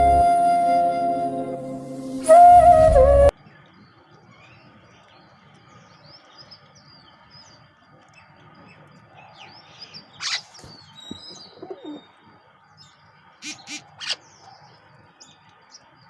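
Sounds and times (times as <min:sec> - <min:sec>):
birds chirping and twittering: 0:03.3 - 0:16.0
loud sharp bird call: 0:10.2 - 0:10.6, 0:13.4 - 0:14.3.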